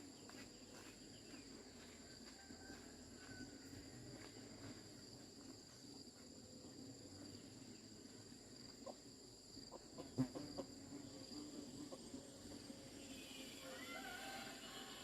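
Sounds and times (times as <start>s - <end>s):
high-pitched insect chirring: 10.2s - 15.0s.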